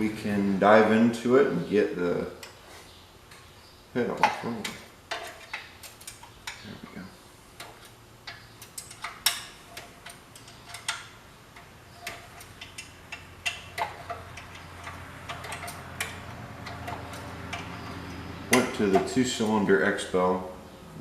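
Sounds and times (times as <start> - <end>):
hand tools clicking and knocking: 4.1 - 6.7, 7.6 - 19.6.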